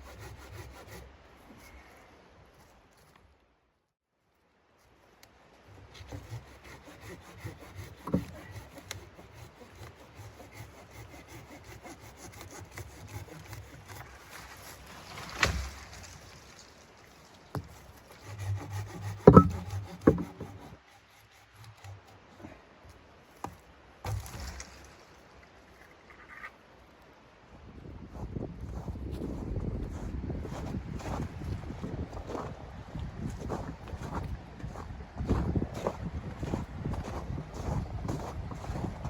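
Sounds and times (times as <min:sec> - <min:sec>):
scraping and rubbing: 0:06.0 - 0:22.1
sharp knocks: 0:19.0 - 0:20.6.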